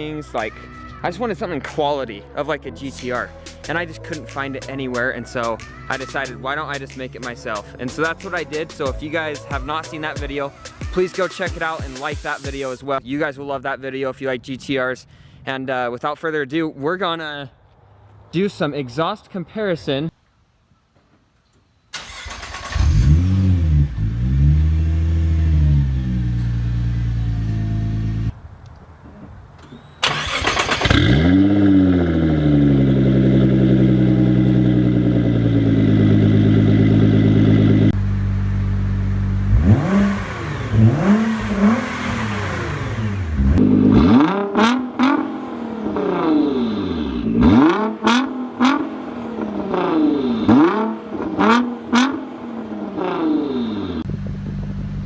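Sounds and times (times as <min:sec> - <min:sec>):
car engine revving: 0:22.0 - 0:28.4, 0:30.0 - 0:55.0.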